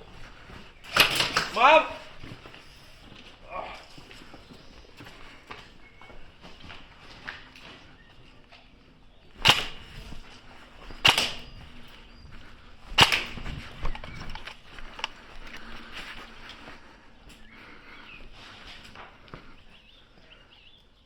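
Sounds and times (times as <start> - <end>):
airsoft gun shots: 0.9 - 1.8, 9.4 - 10.2, 11.0 - 11.6, 13.0 - 13.4.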